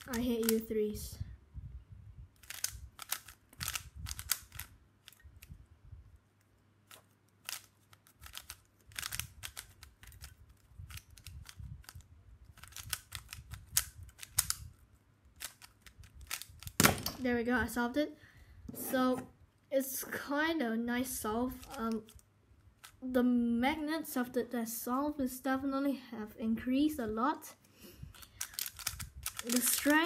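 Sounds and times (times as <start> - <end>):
puzzle cube plastic clicks: 0.0 - 0.7, 2.4 - 5.5, 6.8 - 17.2, 21.5 - 22.2, 28.1 - 30.0.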